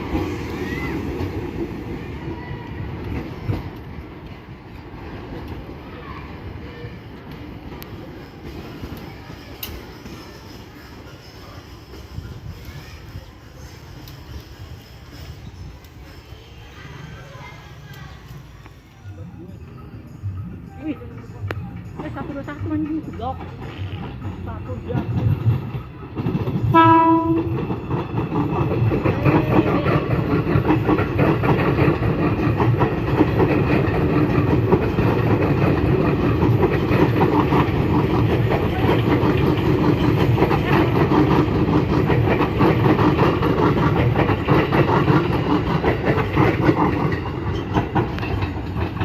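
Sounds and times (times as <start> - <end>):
train wheels clattering over rails: 21.1 - 49.0
train horn blast: 26.7 - 27.6.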